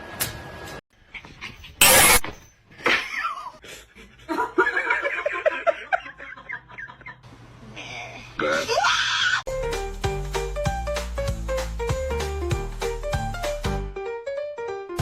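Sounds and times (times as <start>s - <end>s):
person laughing: 2.8s - 7.2s.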